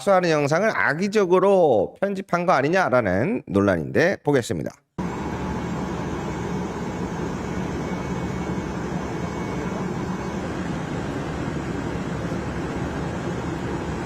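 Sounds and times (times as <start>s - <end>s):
jet engines rumbling: 5.0s - 14.0s.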